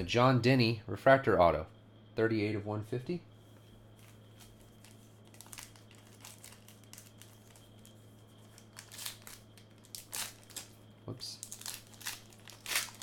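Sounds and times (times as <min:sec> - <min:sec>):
plastic packaging crinkling: 0:04.0 - 0:10.8, 0:11.4 - 0:13.0.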